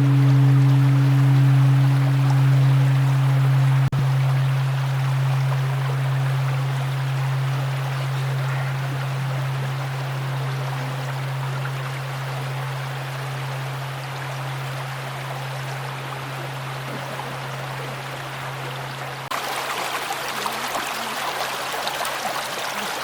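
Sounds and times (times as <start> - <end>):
large temple bell humming: 0.0 - 16.8.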